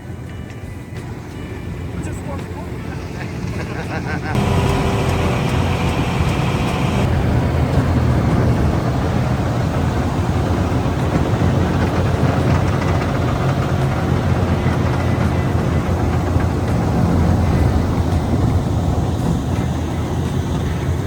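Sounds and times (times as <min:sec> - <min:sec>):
wood chipper shredding straw: 0:04.4 - 0:18.0.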